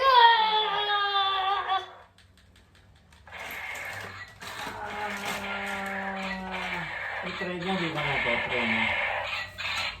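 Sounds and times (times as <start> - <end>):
plastic toys clattering: 2.2 - 8.0.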